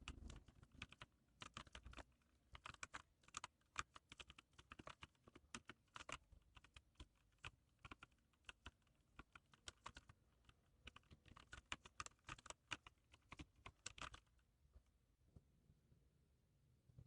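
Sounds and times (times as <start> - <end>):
keyboard typing clicks: 10.9 - 14.3.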